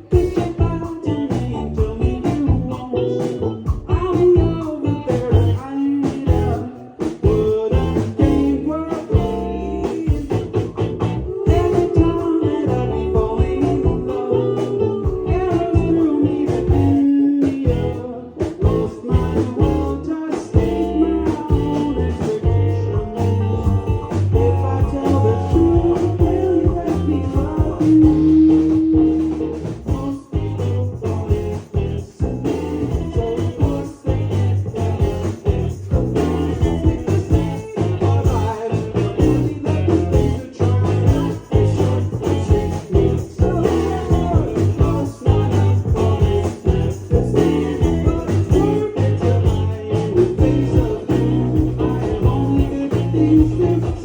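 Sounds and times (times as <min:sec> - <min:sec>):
lead vocal singing: 0:00.0 - 0:54.0
live band playing: 0:00.0 - 0:54.0.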